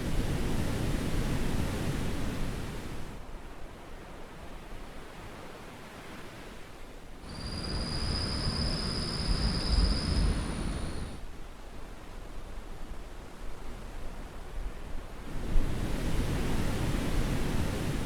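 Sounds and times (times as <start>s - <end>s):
surf washing: 7.2s - 11.2s, 15.3s - 18.0s.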